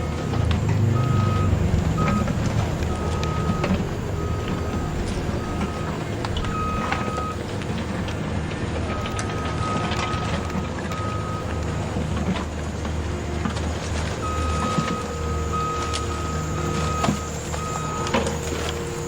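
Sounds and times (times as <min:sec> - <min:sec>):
reversing beeper short beeps: 0:00.0 - 0:07.4, 0:08.9 - 0:11.6, 0:14.2 - 0:19.0
toy bulldozer rumble: 0:00.0 - 0:19.0.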